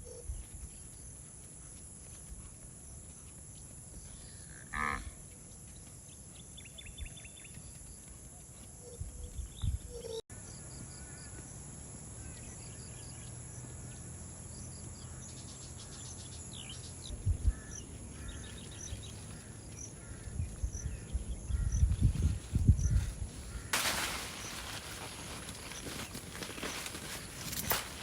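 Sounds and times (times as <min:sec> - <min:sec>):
birds chirping: 0:00.0 - 0:11.4, 0:12.2 - 0:28.0
insects chirping: 0:00.0 - 0:28.0
broad rustling noise: 0:21.8 - 0:28.0.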